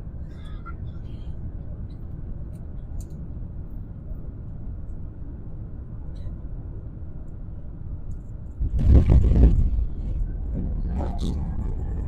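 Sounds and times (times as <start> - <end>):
airliner cabin rumble: 8.4 - 12.0.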